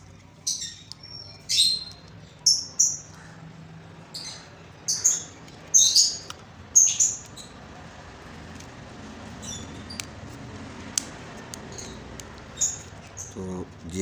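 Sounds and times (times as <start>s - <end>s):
small bird chirping: 0.4s - 3.4s, 4.0s - 7.6s, 9.3s - 10.2s, 11.6s - 13.4s.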